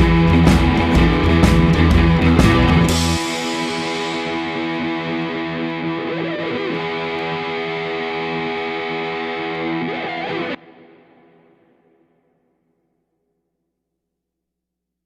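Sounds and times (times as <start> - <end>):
distorted electric guitar chord: 0.0 - 12.0.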